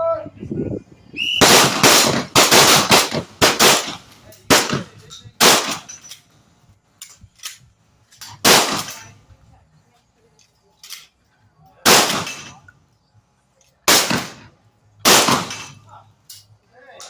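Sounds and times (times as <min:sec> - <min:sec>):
shotgun blasts: 0:01.4 - 0:05.9, 0:08.4 - 0:09.1, 0:11.8 - 0:12.6, 0:13.9 - 0:15.9.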